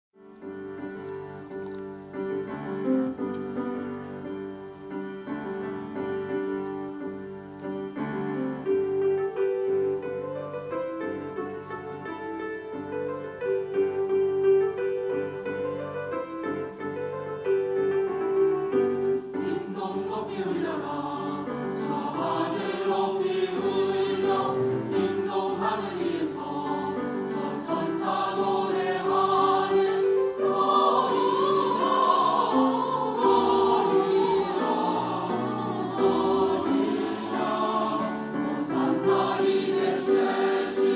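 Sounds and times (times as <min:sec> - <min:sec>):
piano accompaniment: 0:00.2 - 0:40.9
choir singing: 0:19.2 - 0:40.9.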